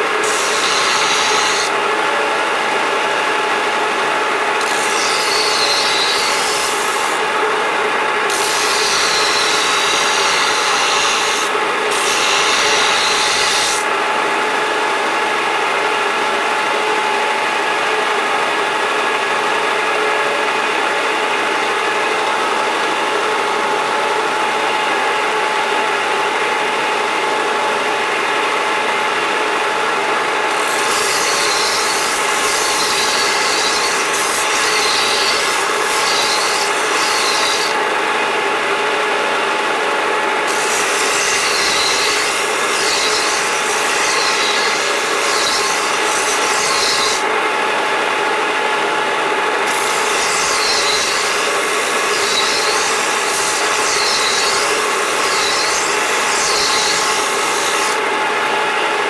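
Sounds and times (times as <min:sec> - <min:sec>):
rasping strokes on steel: 0:00.2 - 0:01.7, 0:04.6 - 0:07.2, 0:08.3 - 0:13.8, 0:30.5 - 0:37.8, 0:40.5 - 0:47.2, 0:49.6 - 0:58.0.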